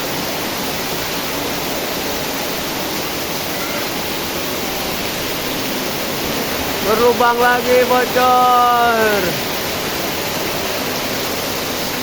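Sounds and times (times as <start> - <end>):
heavy rain: 0.0 - 12.0.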